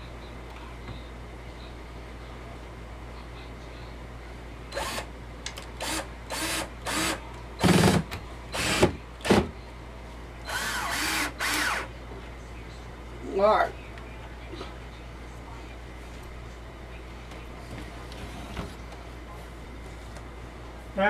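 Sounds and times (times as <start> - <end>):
power drill driving screws: 4.8 - 5.0, 5.8 - 8.0, 10.5 - 11.9.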